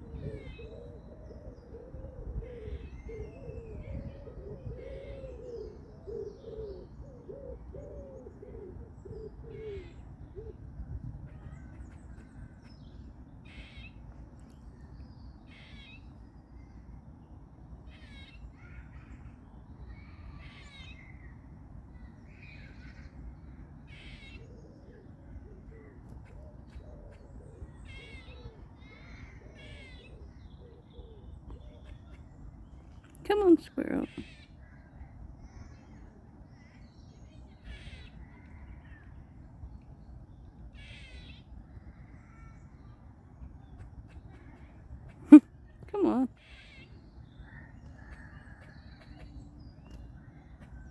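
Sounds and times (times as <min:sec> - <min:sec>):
low wind rumble: 0:00.0 - 0:15.5.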